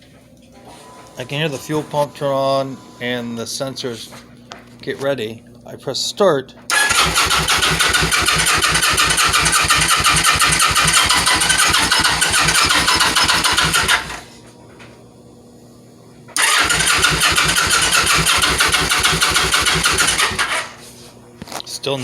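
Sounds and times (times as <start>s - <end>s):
motorcycle engine cranking: 6.7s - 14.3s, 16.4s - 20.8s.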